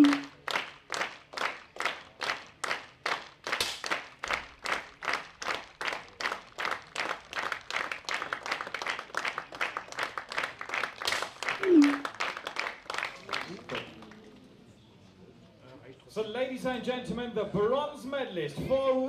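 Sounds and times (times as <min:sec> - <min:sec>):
spectators clapping in unison: 0:00.0 - 0:14.3.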